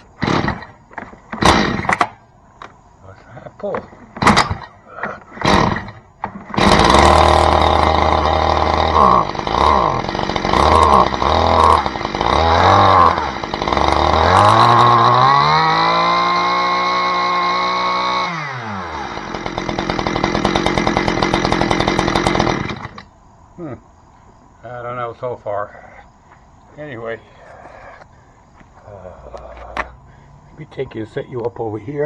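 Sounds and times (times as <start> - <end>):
chainsaw engine revving: 0.0 - 0.8, 1.4 - 2.0, 5.3 - 23.1.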